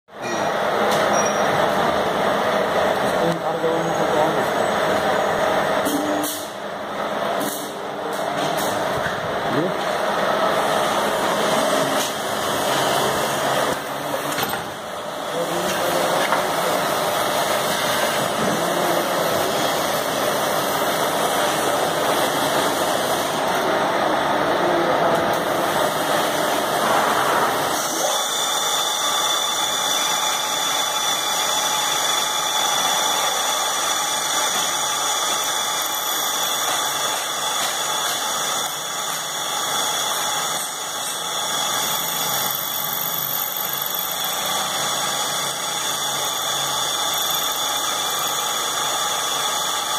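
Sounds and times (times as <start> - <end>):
high-pitched spindle whine: 0.1 - 6.6, 27.5 - 49.9
drilling machine grinding: 8.6 - 49.9.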